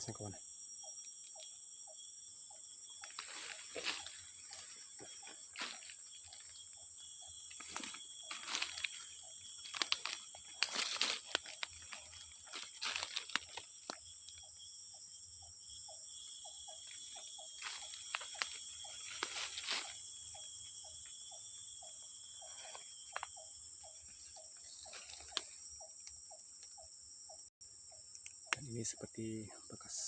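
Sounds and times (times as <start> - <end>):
insects droning: 0.0 - 30.0
footsteps on dry leaves: 3.0 - 6.6, 7.5 - 14.0, 17.6 - 20.0.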